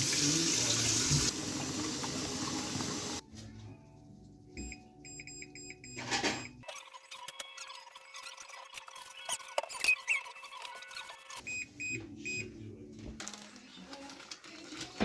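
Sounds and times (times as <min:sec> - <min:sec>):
tap water running into a pot: 0:00.0 - 0:03.2.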